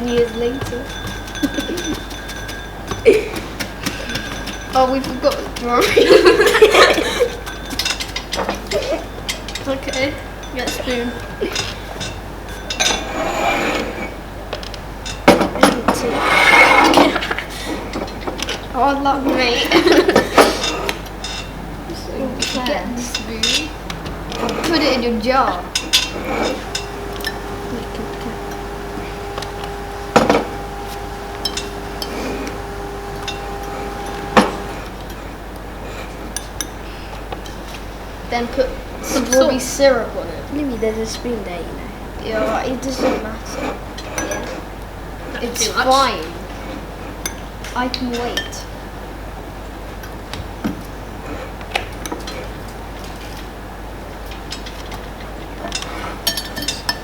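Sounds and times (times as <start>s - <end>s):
metal spoon clinking on glass jar: 0.0s - 14.1s, 55.8s - 57.0s
spoons clinking against dishes: 0.0s - 21.6s, 22.4s - 35.2s, 35.9s - 38.0s, 42.9s - 44.6s, 55.6s - 57.0s
steady hum: 0.0s - 57.0s.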